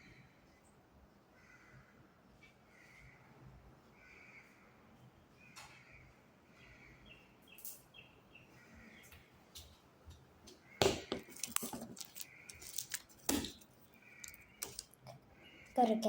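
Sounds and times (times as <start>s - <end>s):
slime squelching and popping: 10.8s - 15.2s.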